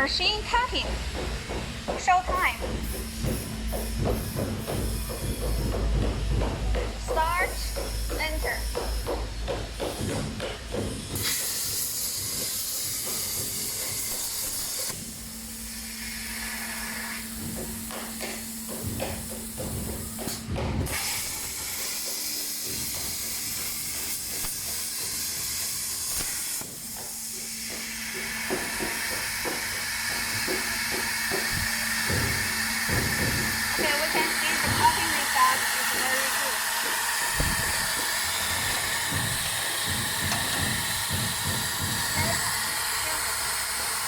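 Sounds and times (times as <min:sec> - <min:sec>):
plasma torch hissing: 0:10.8 - 0:44.0.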